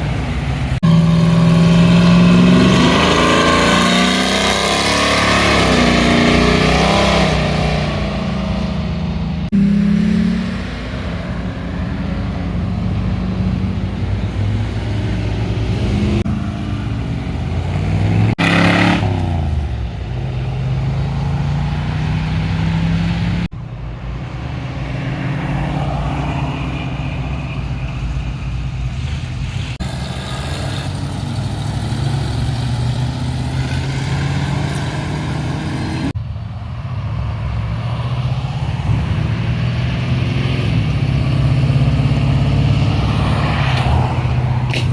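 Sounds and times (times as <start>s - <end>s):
car engines idling: 0.0s - 4.2s, 8.0s - 22.6s, 23.2s - 39.6s
car engine revving: 0.0s - 36.2s, 37.4s - 44.9s.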